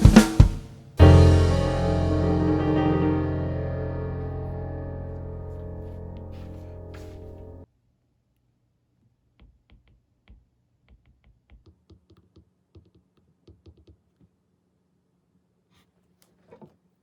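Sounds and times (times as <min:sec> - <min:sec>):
background music: 0:01.0 - 0:07.6.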